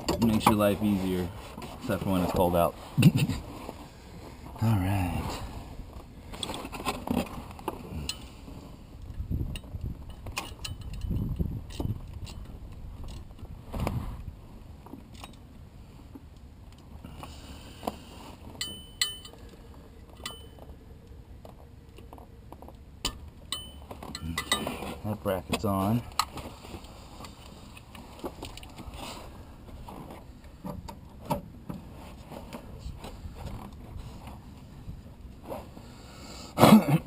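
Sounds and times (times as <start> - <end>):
metallic knocks and tool clinks: 0.0 - 0.6, 9.5 - 12.5, 18.6 - 20.7, 23.0 - 24.9
ringing clinks: 18.6 - 19.5, 20.2 - 20.6, 23.0 - 24.8.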